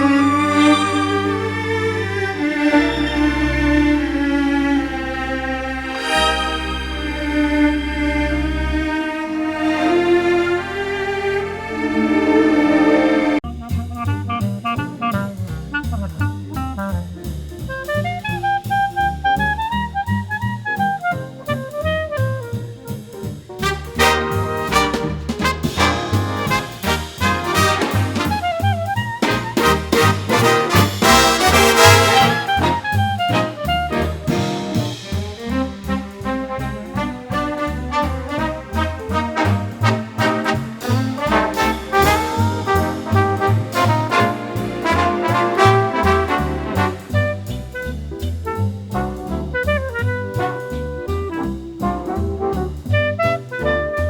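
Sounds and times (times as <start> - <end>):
swing jazz band: 0.0 - 54.0
walking bass line: 13.4 - 54.0.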